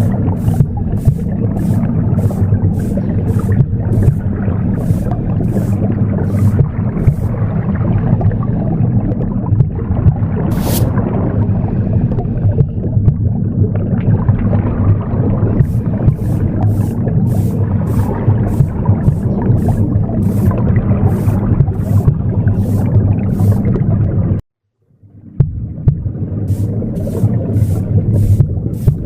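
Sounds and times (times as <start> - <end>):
broom strokes swishing: 0.0 - 7.4, 10.5 - 11.0, 15.6 - 23.8, 26.5 - 29.0
low whooshing womb rumble: 0.0 - 24.4, 25.1 - 29.0.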